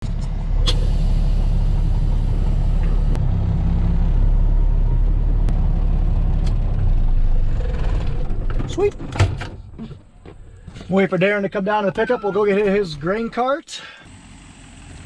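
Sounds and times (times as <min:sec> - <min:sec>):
vehicle engine running: 0:00.0 - 0:08.8, 0:14.0 - 0:15.0.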